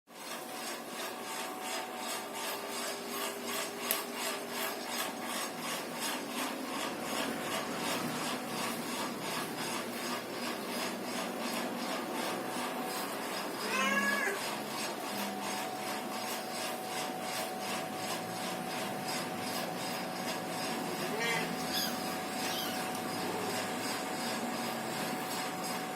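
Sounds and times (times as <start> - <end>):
cat meowing: 13.6 - 14.4, 21.1 - 23.0.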